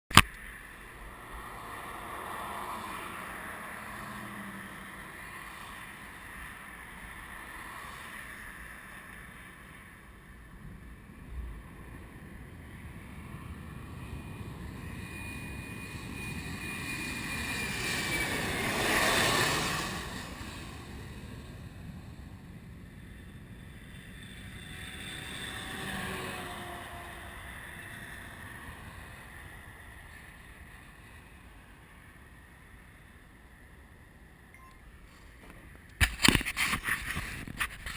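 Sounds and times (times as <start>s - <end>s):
jet engines passing: 0.1s - 37.9s
wind noise on microphone: 36.0s - 37.9s.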